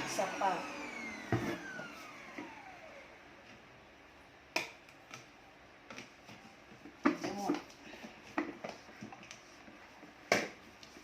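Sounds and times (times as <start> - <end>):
vacuum cleaner motor winding down: 0.0 - 3.3.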